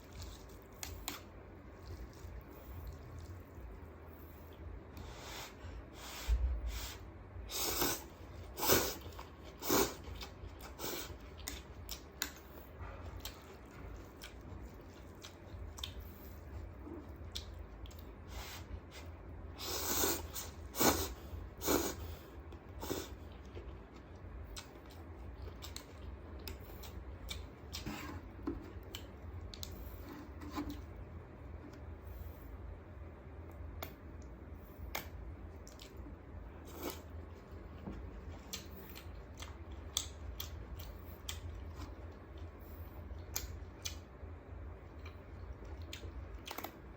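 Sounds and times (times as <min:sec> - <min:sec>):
person chewing food: 0:00.0 - 0:05.1, 0:07.6 - 0:32.0, 0:33.8 - 0:46.9.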